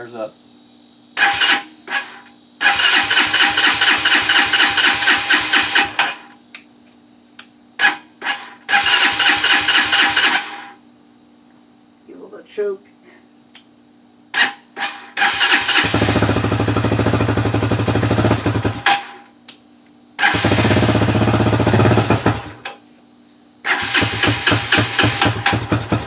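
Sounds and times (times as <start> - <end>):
engine cranking with electric starter: 1.2 - 6.2, 7.8 - 10.7, 14.4 - 19.2, 20.2 - 22.7, 23.7 - 26.0.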